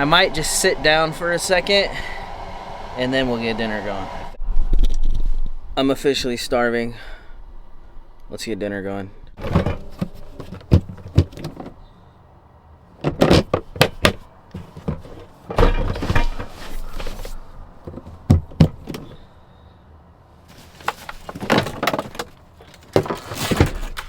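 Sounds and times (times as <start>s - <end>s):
rustling clatter: 9.4s - 11.8s, 13.0s - 19.2s, 20.5s - 24.0s.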